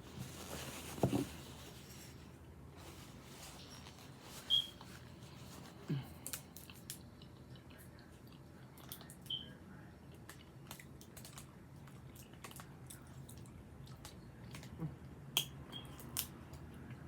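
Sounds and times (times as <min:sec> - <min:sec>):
person chewing: 0:05.7 - 0:09.1.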